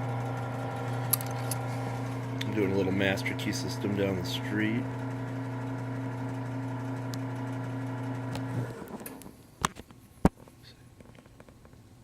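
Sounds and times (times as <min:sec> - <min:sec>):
key-marking machine humming: 0:00.0 - 0:09.2.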